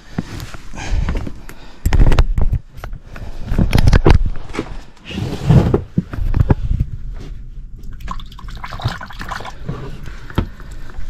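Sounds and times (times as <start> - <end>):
water sloshing and dripping: 7.8 - 11.0.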